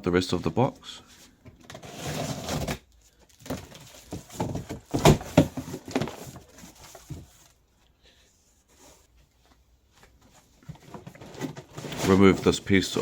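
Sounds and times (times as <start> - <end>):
cardboard scraping and rustling: 1.6 - 7.6, 10.4 - 13.0.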